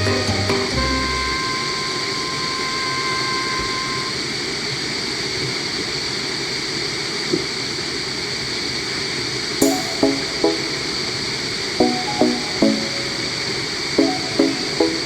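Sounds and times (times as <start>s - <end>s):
background music held notes: 0.0s - 2.0s, 9.6s - 15.0s.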